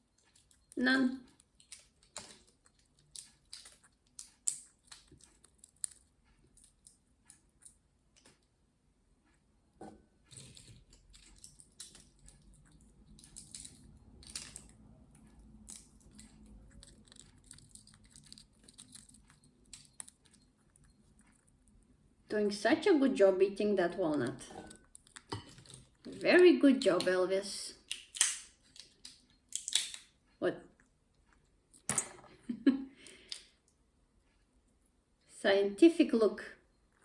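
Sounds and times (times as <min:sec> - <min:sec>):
bird beak chewing nut: 0:10.3 - 0:21.8.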